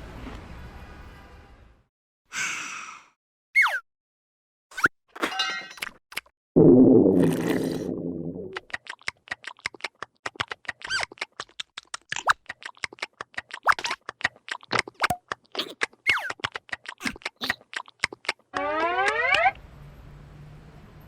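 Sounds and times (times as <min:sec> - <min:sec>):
falling squeal: 0:18.6 - 0:19.6
squeaky gliding chirps: 0:18.6 - 0:19.6.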